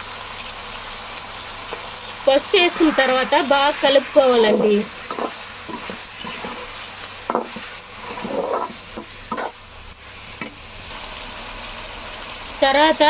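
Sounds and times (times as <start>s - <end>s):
chicken sizzling in hot oil: 0.0s - 13.0s
spoon scraping and knocking pan: 2.7s - 10.6s.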